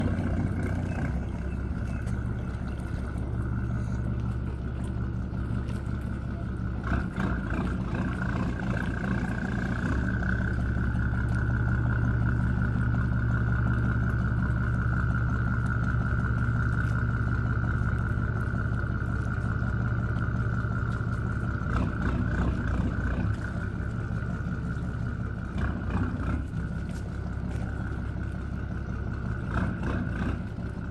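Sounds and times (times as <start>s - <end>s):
motorboat engine drone: 0.0s - 30.9s.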